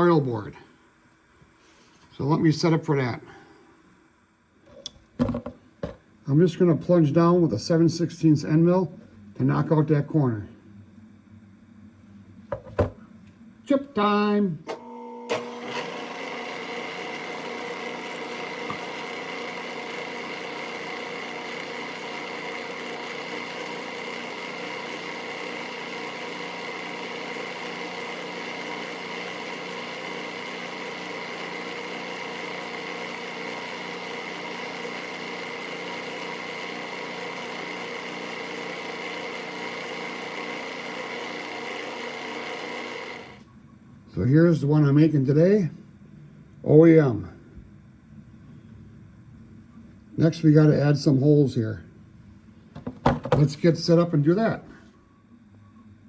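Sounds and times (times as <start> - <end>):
machine spindle whine: 14.7 - 43.4
end mill cutting metal: 15.3 - 43.4.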